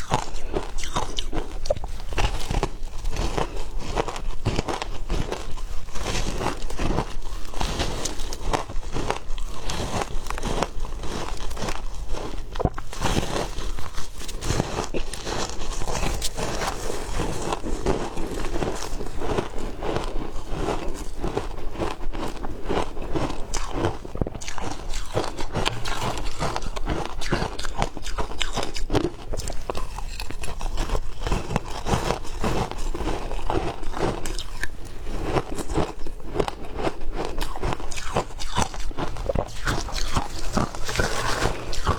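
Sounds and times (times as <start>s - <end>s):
shaved ice crunching: 37.4s - 41.9s.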